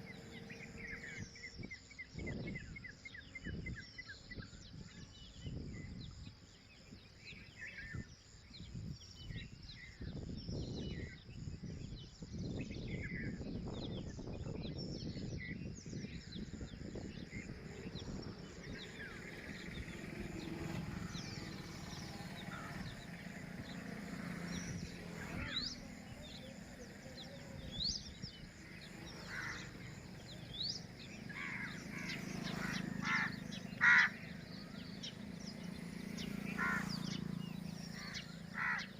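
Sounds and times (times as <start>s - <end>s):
birds chirping: 0.0s - 38.9s.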